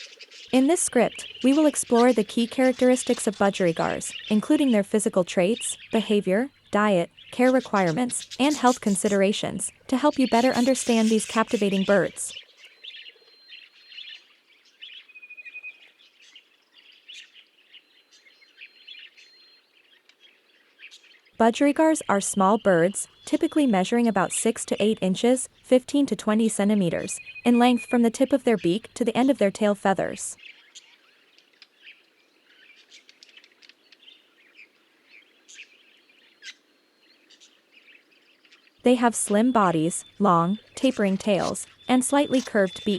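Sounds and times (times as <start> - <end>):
budgerigar chatter: 0.0 - 12.5, 21.4 - 30.4, 38.9 - 42.9
small birds chirping: 0.0 - 42.9.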